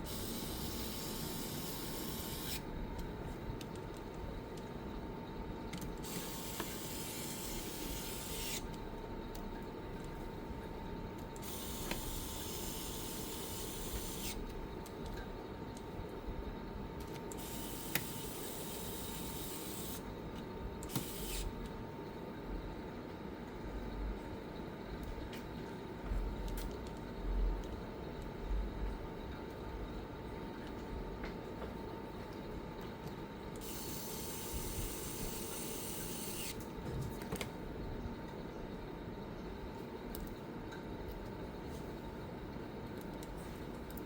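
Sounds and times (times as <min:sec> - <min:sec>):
small mechanical clicks: 0:00.0 - 0:04.7, 0:11.2 - 0:15.2, 0:17.0 - 0:20.0, 0:20.8 - 0:21.7, 0:33.6 - 0:36.7
steady low hum: 0:00.0 - 0:44.0.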